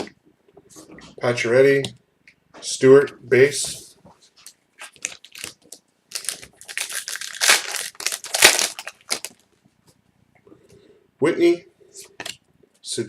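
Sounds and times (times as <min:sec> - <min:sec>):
wrapper crackling and rustling: 0:04.4 - 0:09.5.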